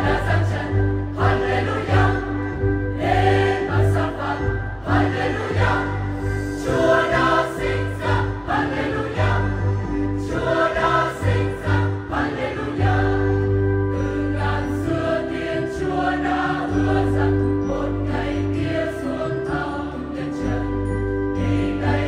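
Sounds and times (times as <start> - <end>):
church choir singing a hymn: 0.0 - 22.0.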